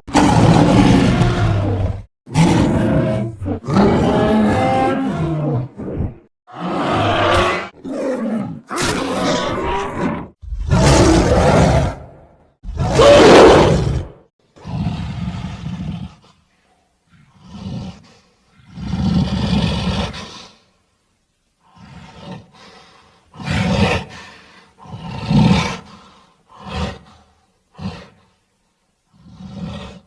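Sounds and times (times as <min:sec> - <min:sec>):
dinosaur roars: 0:00.1 - 0:16.1.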